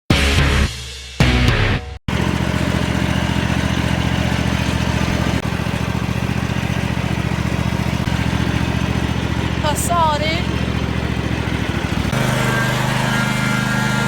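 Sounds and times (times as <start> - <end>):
lawn mower engine running: 2.1 - 14.0.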